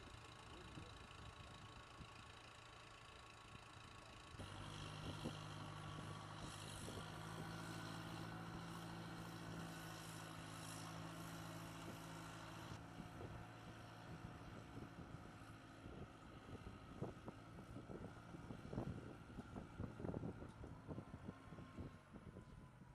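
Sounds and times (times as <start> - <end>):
engine drone: 3.5 - 22.9.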